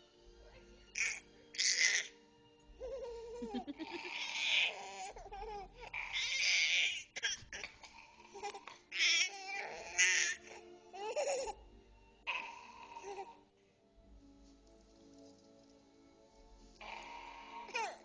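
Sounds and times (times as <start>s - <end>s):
baby wailing: 1.0s - 2.1s, 2.8s - 11.6s, 16.8s - 18.0s
baby squealing: 3.8s - 7.7s.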